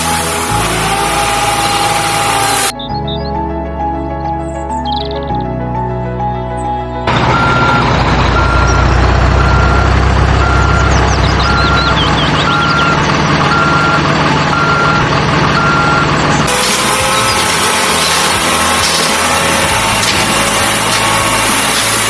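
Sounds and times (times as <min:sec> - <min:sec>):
loud engine rumble: 0:00.0 - 0:03.9, 0:06.9 - 0:22.0
truck reversing alarm beeping: 0:07.1 - 0:22.0.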